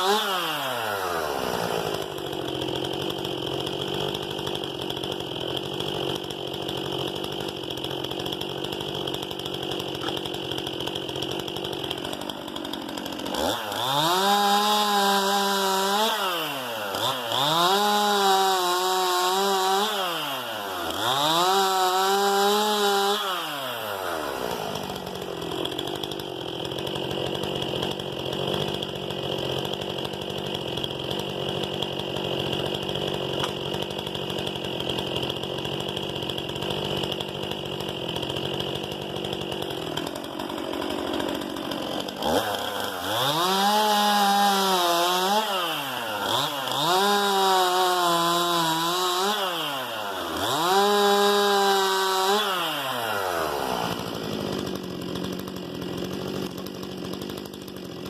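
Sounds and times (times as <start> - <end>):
chainsaw idling and revving: 0.0 - 58.0.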